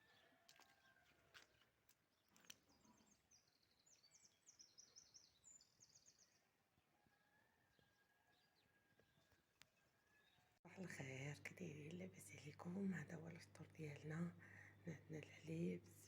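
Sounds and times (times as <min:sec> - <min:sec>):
songbird chirping: 0:00.0 - 0:16.0.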